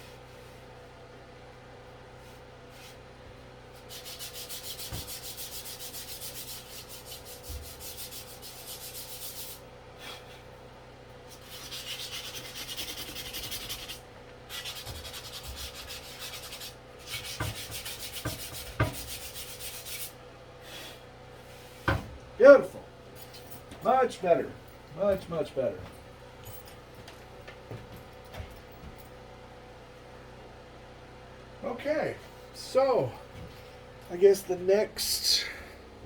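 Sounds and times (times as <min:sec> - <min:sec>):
sandpaper rubbing wood: 0:03.8 - 0:09.6, 0:11.3 - 0:20.2.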